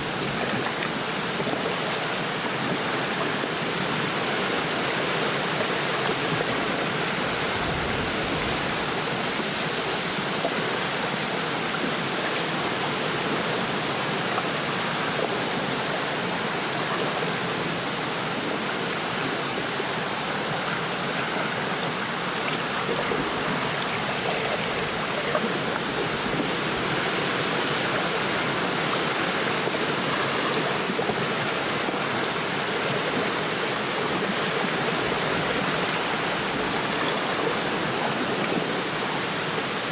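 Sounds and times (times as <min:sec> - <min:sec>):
wind rustling through reeds: 0:00.0 - 0:10.3, 0:22.0 - 0:39.8
small waves lapping: 0:00.0 - 0:39.9.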